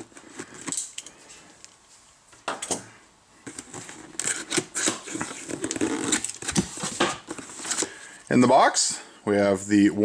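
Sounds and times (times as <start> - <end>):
hands handling box packaging: 3.4 - 8.3.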